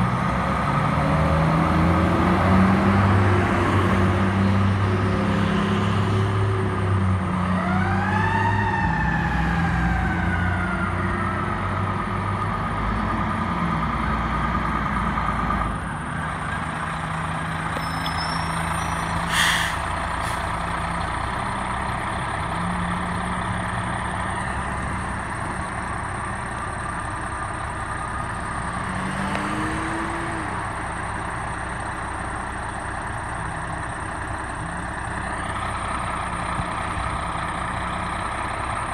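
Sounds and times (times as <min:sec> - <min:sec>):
fire engine mechanical siren: 0:07.4 - 0:12.4
diesel engine running: 0:09.6 - 0:38.9
air brake hiss: 0:19.2 - 0:20.6.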